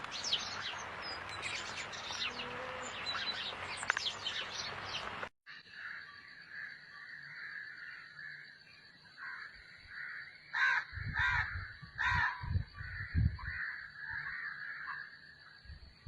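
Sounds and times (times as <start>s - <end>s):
crow cawing: 9.2s - 15.1s.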